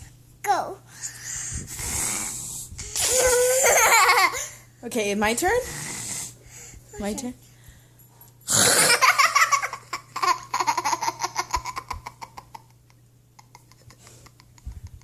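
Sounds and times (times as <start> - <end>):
child giggling: 3.0 - 4.5, 8.9 - 14.9.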